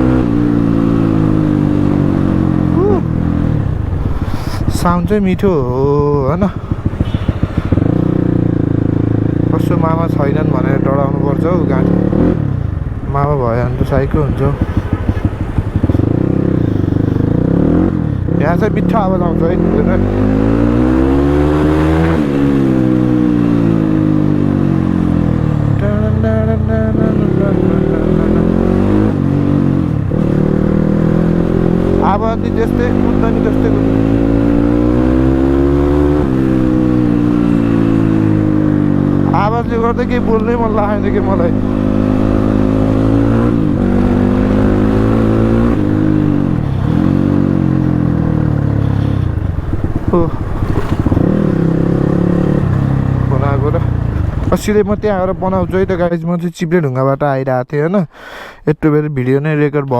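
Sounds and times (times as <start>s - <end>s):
motorcycle engine revving: 0.0s - 56.2s.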